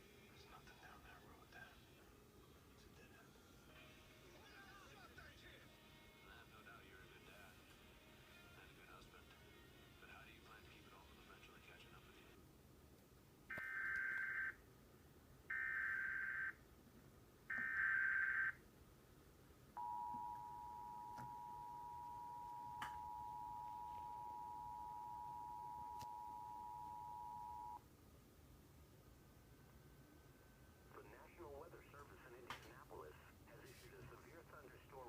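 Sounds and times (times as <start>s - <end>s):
two-tone attention signal: 19.8s - 27.8s.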